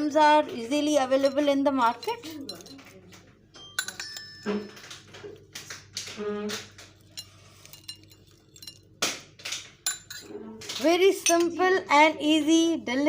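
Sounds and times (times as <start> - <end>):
spoon clinking on crockery: 1.0 - 5.8, 6.5 - 9.0, 9.8 - 10.4, 11.2 - 11.6.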